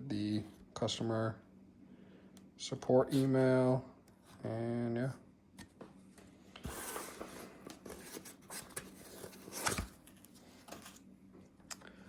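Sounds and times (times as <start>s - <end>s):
packaging rustling and scraping: 6.6s - 11.0s.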